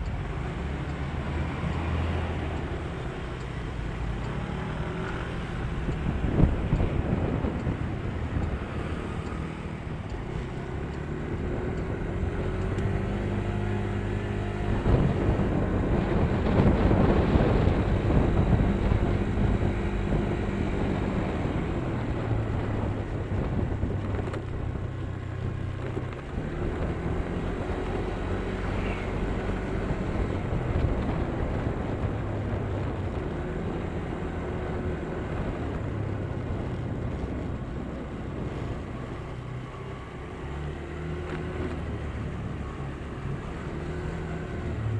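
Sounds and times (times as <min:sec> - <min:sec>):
road and wind noise: 0:00.0 - 0:44.9
vehicle engine changing gears: 0:00.0 - 0:44.9.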